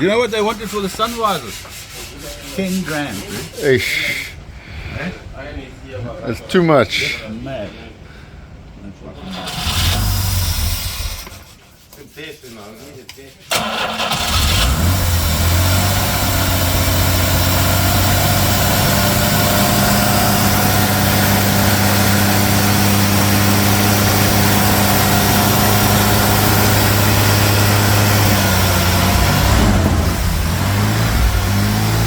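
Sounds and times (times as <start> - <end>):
car engine idling: 13.5 - 32.0.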